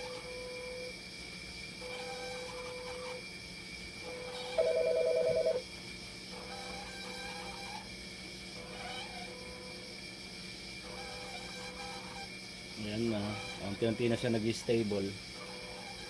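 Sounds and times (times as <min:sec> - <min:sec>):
machine alarm beeping: 0:04.1 - 0:05.6.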